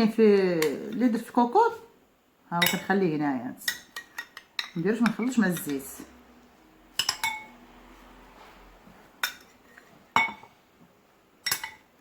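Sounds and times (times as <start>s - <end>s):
containers and utensil clinking: 6.9s - 7.7s, 11.4s - 12.0s.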